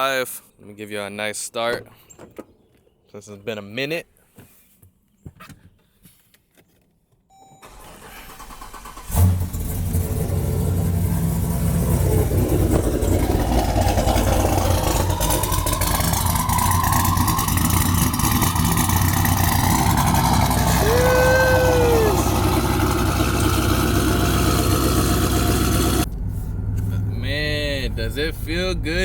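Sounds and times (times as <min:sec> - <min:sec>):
engine starting and idling: 0:07.6 - 0:29.0
starter motor cranking: 0:07.7 - 0:09.7, 0:12.3 - 0:20.8.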